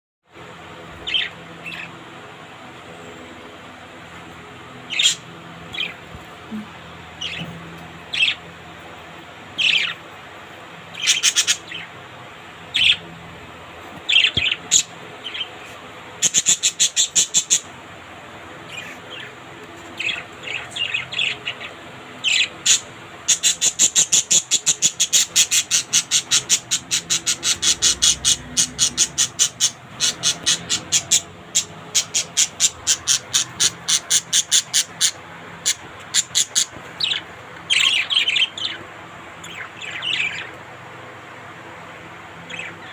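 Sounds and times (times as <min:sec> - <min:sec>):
parrots chirping: 0:00.7 - 0:42.9.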